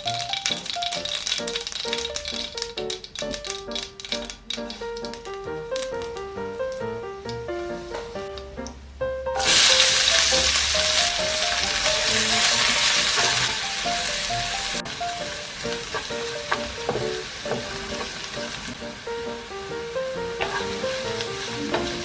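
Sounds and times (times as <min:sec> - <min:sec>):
food sizzling in hot oil: 0:00.0 - 0:04.8, 0:09.4 - 0:22.0
stirring clicks: 0:00.0 - 0:07.4, 0:15.2 - 0:18.7.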